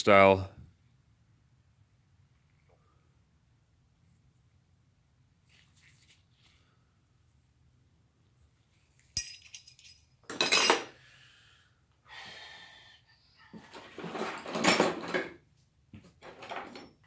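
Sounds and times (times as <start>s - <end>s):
metal tools clinking: 9.1s - 10.9s
metal tools clattering: 9.2s - 10.9s, 13.8s - 15.4s.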